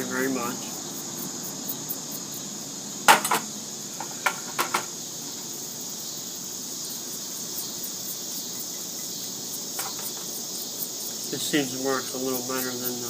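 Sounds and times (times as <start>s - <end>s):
crickets chirring: 0.0s - 13.0s
sharp clicks and knocks: 3.1s - 4.9s, 9.8s - 10.3s.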